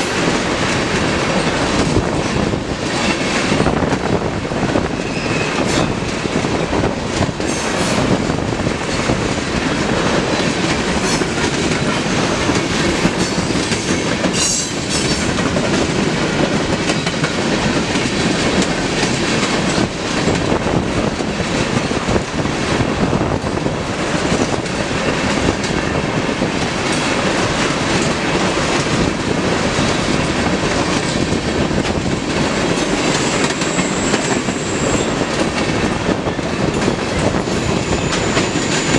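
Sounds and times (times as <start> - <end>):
freight train wheels rumbling: 0.0 - 38.9
wheel squeal: 5.0 - 5.9, 32.6 - 35.4, 37.6 - 38.9.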